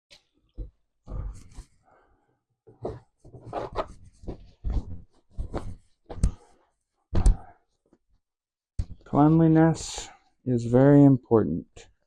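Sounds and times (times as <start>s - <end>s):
rubbing and scuffing handling noises: 2.7s - 7.0s.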